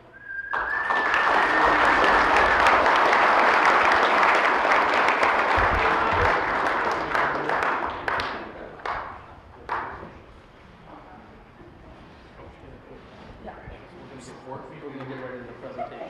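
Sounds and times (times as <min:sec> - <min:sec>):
long steady whistle: 0:00.0 - 0:02.4
audience applauding: 0:00.0 - 0:10.0.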